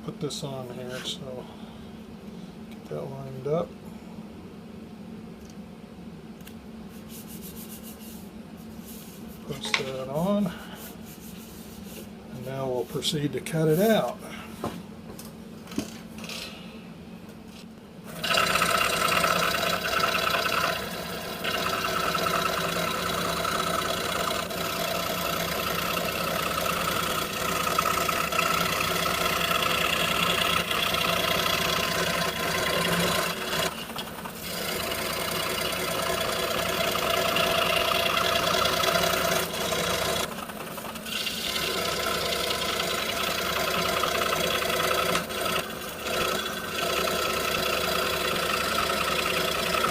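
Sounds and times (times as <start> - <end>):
scroll saw cutting wood: 18.1 - 49.9.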